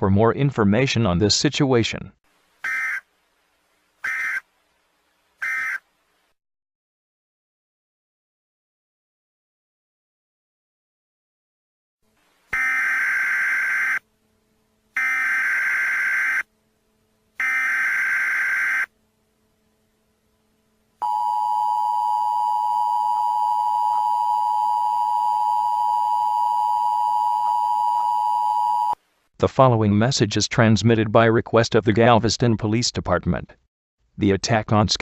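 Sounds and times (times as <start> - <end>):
screeching data bursts: 12.6 - 14.0, 15.0 - 16.4, 17.4 - 18.9.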